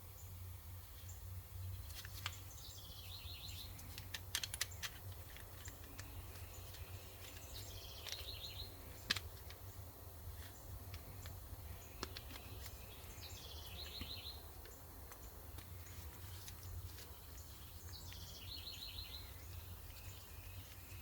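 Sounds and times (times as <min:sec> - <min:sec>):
low steady hum: 0:00.0 - 0:21.0
sharp clicks: 0:03.6 - 0:09.8, 0:10.5 - 0:13.0
songbird trilling: 0:05.6 - 0:09.8, 0:10.5 - 0:21.0.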